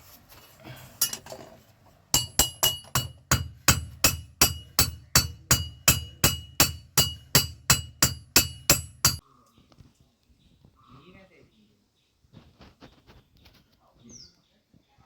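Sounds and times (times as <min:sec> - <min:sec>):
hammer striking iron on anvil: 0:02.2 - 0:09.2.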